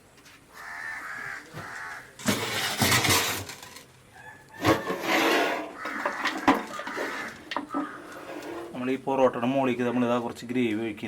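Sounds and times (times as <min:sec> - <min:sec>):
crows cawing: 0:00.5 - 0:02.2, 0:05.7 - 0:08.3.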